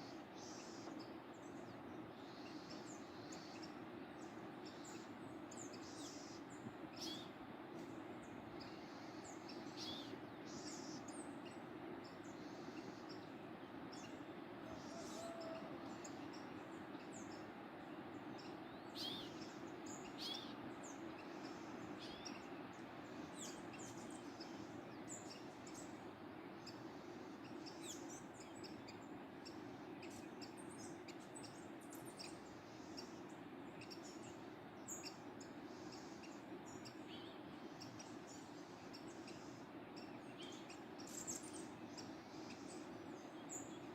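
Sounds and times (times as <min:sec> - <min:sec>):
birds chirping and singing: 0:08.2 - 0:17.5.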